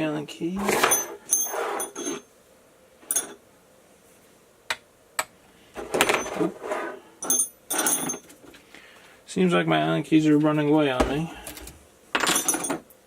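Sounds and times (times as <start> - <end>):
metal hand tools rattling: 7.2 - 8.3.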